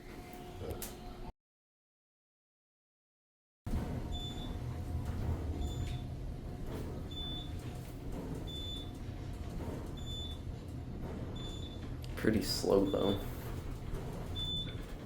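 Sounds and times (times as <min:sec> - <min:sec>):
elevator low rumble: 0:03.7 - 0:15.0.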